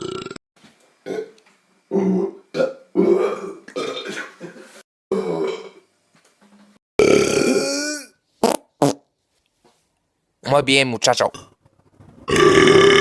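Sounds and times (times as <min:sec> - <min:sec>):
loud burping: 0:00.0 - 0:00.4, 0:01.9 - 0:04.3, 0:05.1 - 0:05.8, 0:07.0 - 0:09.0, 0:12.3 - 0:13.0.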